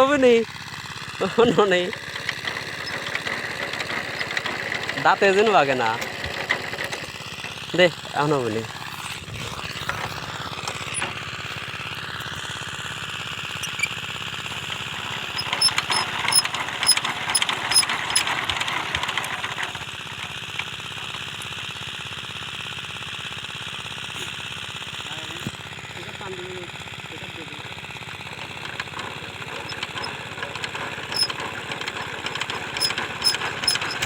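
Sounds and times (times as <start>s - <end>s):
diesel engine running: 0.0s - 34.0s
sharp metallic clicking and rattling: 1.1s - 21.8s, 28.2s - 34.0s.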